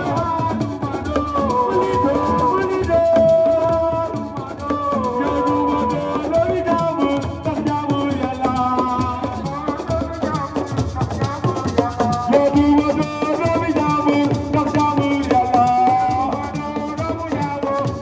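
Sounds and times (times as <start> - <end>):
person singing long gliding notes: 0.0 - 10.0
hand drumming: 0.0 - 18.0
rattling shaker: 0.0 - 18.0.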